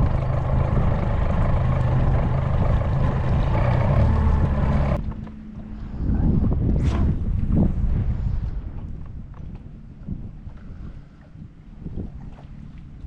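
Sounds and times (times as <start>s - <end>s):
motorboat engine running: 0.0s - 8.2s
wind rushing over microphone: 0.0s - 12.4s.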